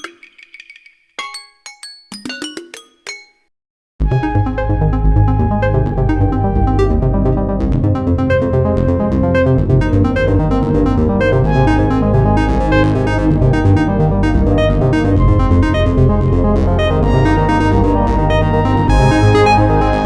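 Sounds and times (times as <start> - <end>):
electronic synthesizer ringtone music: 4.2 - 20.0.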